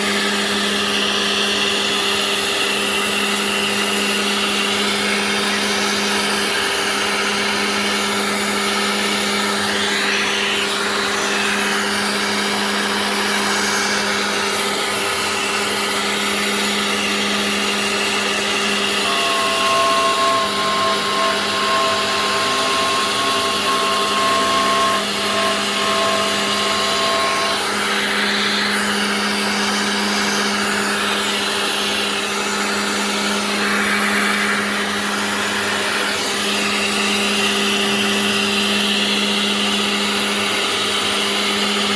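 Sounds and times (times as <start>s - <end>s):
router spindle hum and hiss: 0.0s - 41.9s
two-note whine: 18.6s - 40.0s.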